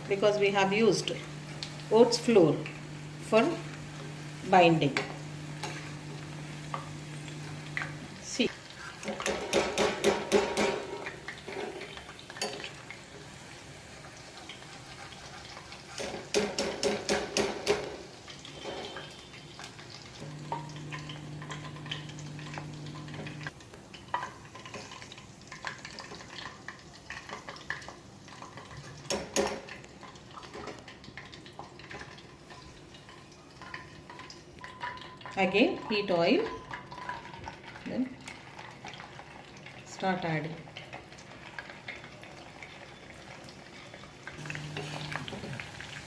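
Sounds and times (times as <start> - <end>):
chicken sizzling in oil: 0.0 - 46.0
steady low hum: 1.0 - 8.1, 20.2 - 23.5.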